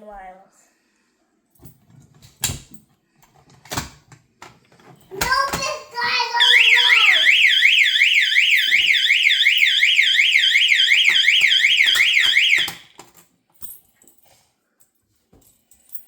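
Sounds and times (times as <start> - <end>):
fire alarm sweeping tone: 6.4 - 12.9.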